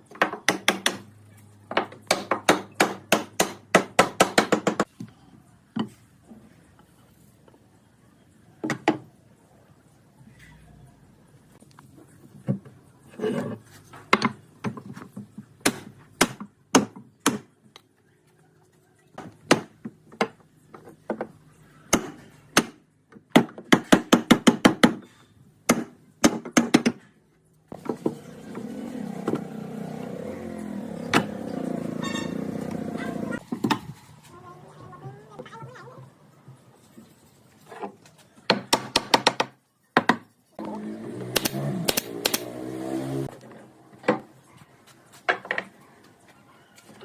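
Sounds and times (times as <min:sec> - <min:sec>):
hammering on wood: 0:00.1 - 0:01.1, 0:01.7 - 0:04.9, 0:21.9 - 0:25.0, 0:38.5 - 0:40.2.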